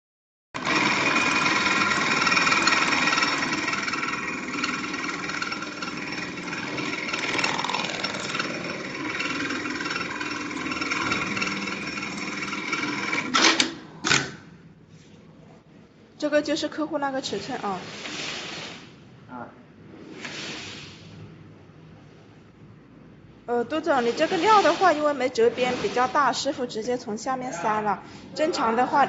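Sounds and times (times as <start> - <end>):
sewing machine running: 0.6 - 14.2.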